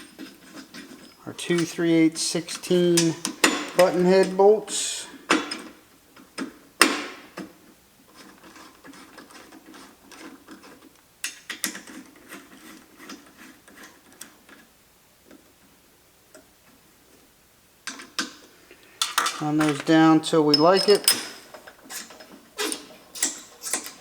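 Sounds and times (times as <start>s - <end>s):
bolts threading ticks: 1.3s - 5.7s, 19.0s - 24.0s.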